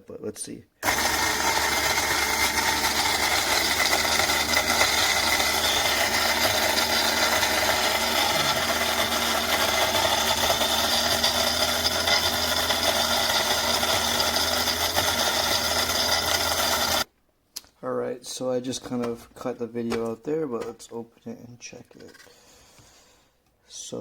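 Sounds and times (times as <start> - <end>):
electric coffee grinder running: 0.8 - 17.1.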